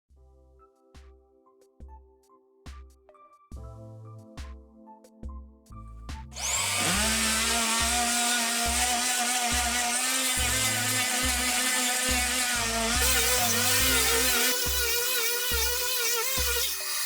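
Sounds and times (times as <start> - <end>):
small electric motor whining: 6.4 - 17.0.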